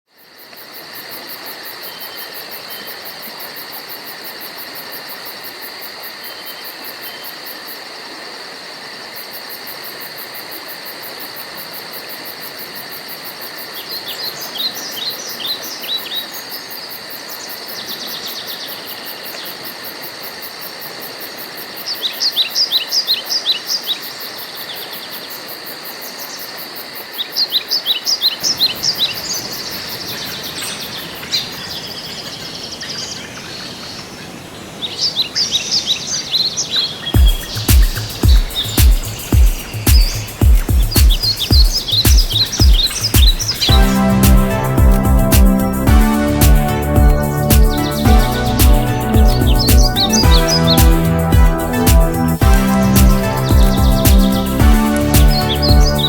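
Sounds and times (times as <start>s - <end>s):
insect chorus trilling: 0.2s - 34.3s, 36.8s - 43.7s
songbird sharp repeated notes: 37.2s - 56.0s.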